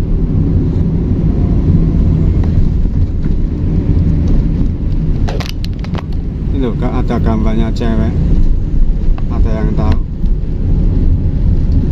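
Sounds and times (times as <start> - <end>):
road noise: 0.0 - 11.9
truck engine rumbling: 0.0 - 11.9.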